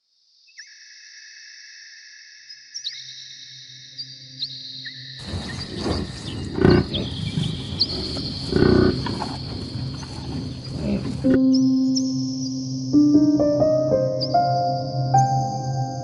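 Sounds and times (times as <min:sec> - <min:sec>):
roar-like animal growl: 0:05.2 - 0:11.3
faint chirping electronic tones: 0:11.2 - 0:16.0
soft piano music: 0:11.2 - 0:16.0.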